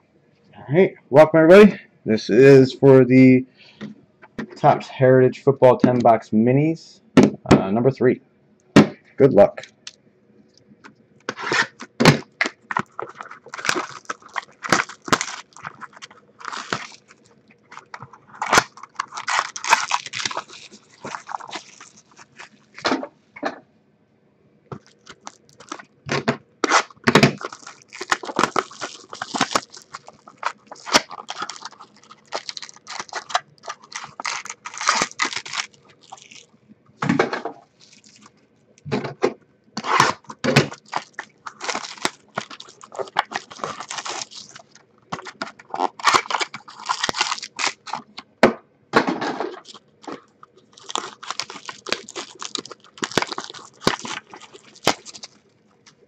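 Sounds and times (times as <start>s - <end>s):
plastic wrappers tearing: 11.3s - 22.9s, 24.7s - 36.5s, 37.8s - 38.4s, 39.8s - 48.2s, 49.6s - 56.0s.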